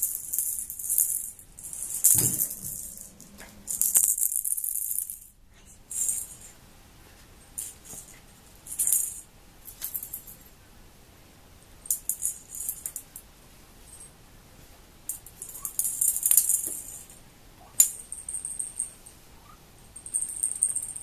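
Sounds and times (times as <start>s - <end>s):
dry high rattling: 0.0s - 5.3s.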